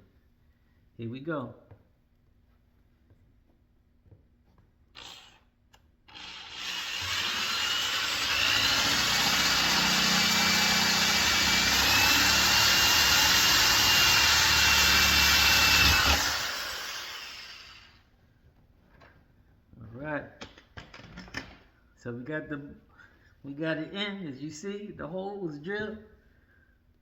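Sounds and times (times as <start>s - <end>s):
electric drill whining: 5.0s - 5.4s, 6.1s - 18.0s.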